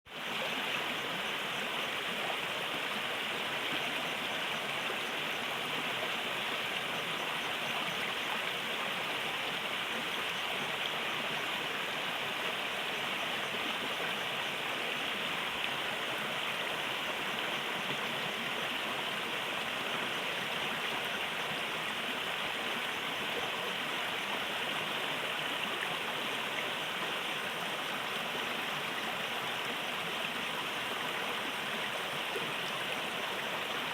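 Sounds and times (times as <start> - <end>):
small river rushing and gurgling: 0.1 - 33.9.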